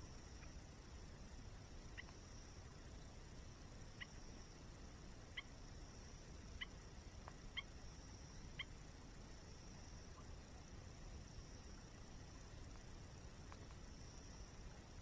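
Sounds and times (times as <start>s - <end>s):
low background haze: 0.0s - 15.0s.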